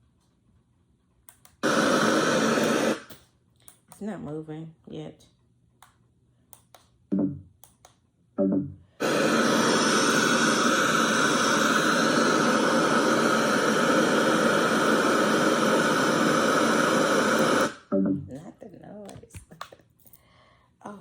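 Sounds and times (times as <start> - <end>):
radio static hiss: 9.0 - 18.1.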